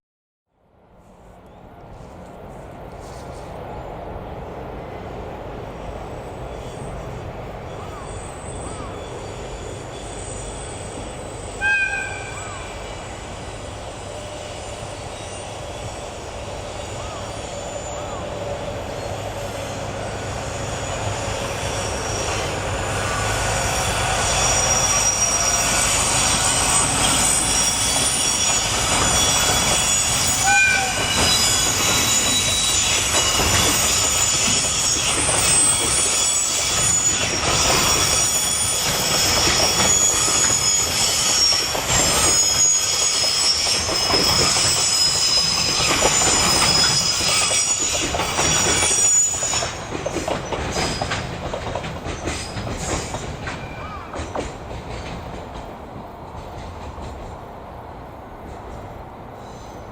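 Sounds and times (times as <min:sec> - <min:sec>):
wheels squealing: 0:07.7 - 0:16.1, 0:16.7 - 0:55.2
train horn toot: 0:11.5 - 0:12.8, 0:24.3 - 0:32.8
wheels clacking over rail joints: 0:21.4 - 0:57.7.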